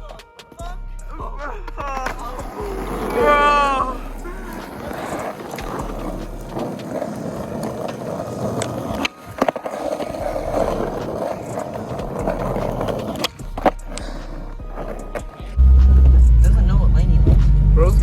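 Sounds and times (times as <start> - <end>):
skateboard clacks: 1.7 - 15.6
skateboard wheels rolling on pavement: 1.9 - 16.1.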